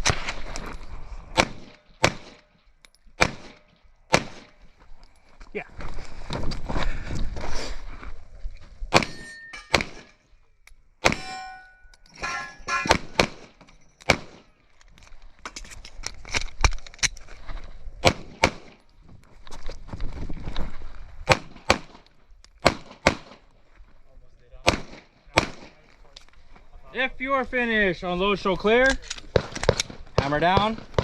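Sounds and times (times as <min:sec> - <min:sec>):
airsoft pistol shots: 0:03.2 - 0:04.5, 0:12.9 - 0:14.4
pellets ringing on steel targets: 0:09.0 - 0:10.2, 0:11.1 - 0:13.2.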